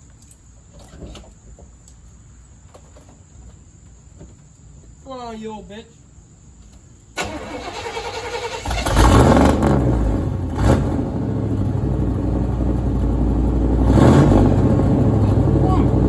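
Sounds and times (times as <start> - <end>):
truck engine cranking: 7.2 - 16.0
truck engine revving and idling: 7.3 - 16.0.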